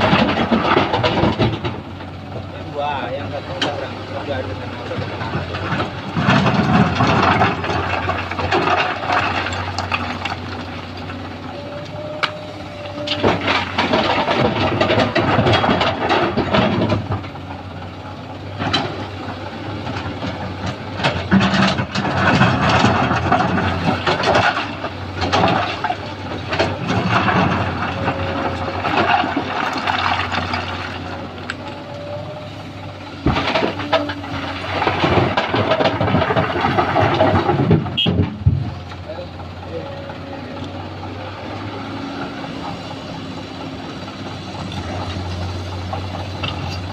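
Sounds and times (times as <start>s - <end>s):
excavator diesel engine running: 0.0s - 46.9s
rock clattering and scraping: 3.5s - 17.7s, 18.5s - 41.0s.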